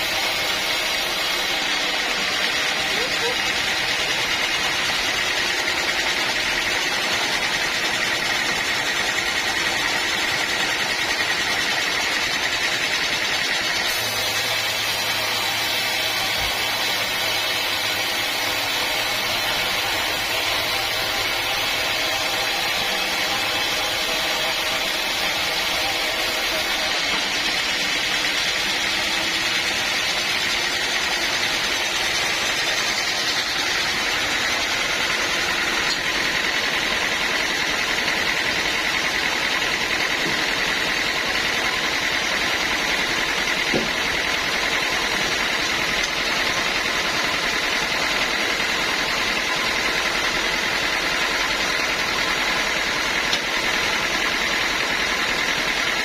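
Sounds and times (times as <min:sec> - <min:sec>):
sawmill engine running: 0:00.0 - 0:56.0.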